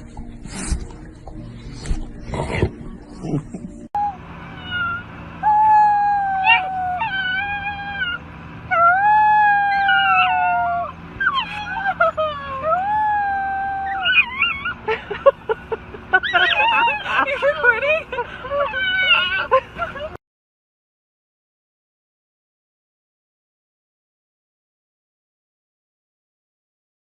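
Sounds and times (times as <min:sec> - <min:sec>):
dog howling and yelping: 0:04.5 - 0:14.9, 0:16.2 - 0:17.3, 0:18.5 - 0:19.6.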